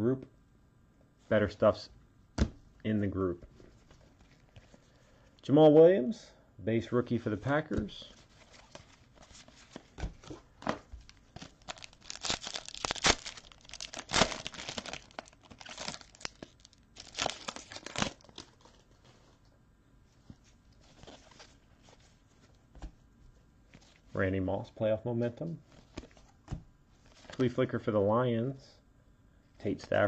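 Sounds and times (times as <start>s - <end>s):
handling cards: 7.4s - 19.5s, 20.1s - 23.0s, 25.6s - 27.6s
wrapper tearing and crinkling: 11.1s - 19.0s.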